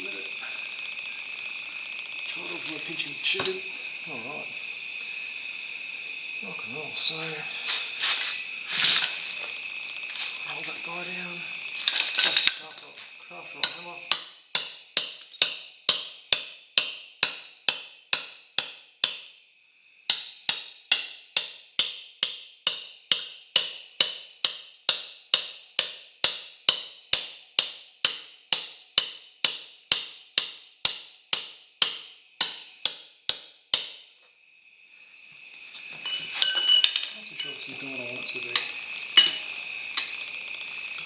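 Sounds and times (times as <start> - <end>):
hammer tapping: 13.6 - 19.3, 20.1 - 34.0.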